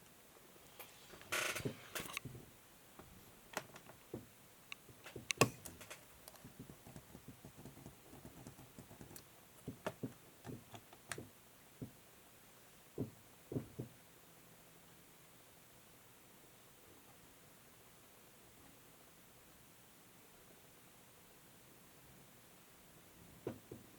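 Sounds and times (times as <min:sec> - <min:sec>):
laptop keys clicking: 0:04.7 - 0:09.2
knock on plastic case: 0:13.0 - 0:13.9.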